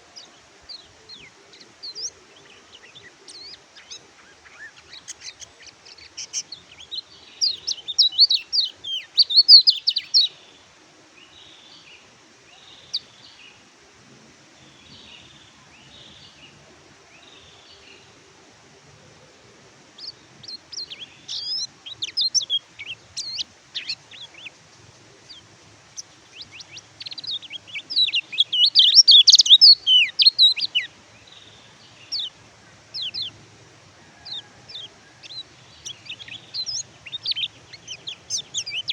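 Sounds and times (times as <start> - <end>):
bird twittering chirps: 0.0 - 10.4, 20.0 - 24.5, 25.2 - 33.4, 34.2 - 38.9.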